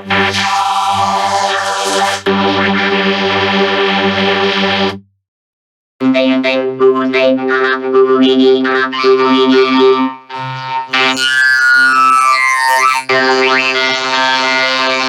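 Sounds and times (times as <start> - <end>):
buzzy synthesizer tones: 9.4 - 15.0.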